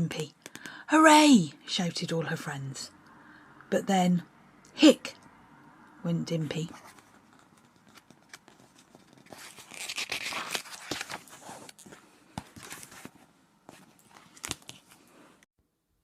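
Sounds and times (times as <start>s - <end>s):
book pages rustling: 6.7s - 15.4s.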